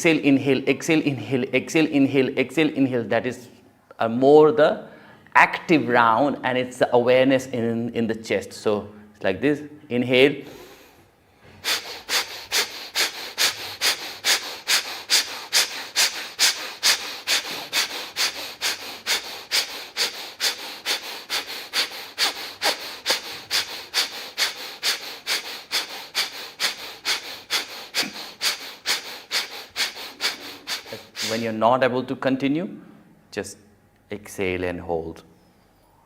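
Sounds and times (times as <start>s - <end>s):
rapid forceful nasal breathing: 10.5s - 31.5s.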